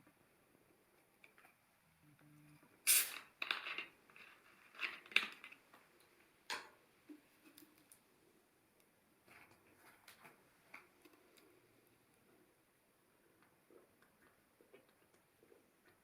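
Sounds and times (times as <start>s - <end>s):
plastic bottle hiss and crackle: 2.8s - 5.6s.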